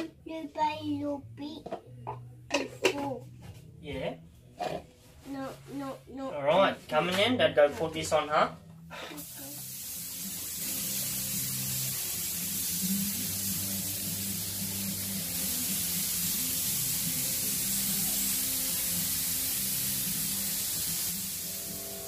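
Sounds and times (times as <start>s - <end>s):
paint spray gun hissing: 9.2s - 22.0s.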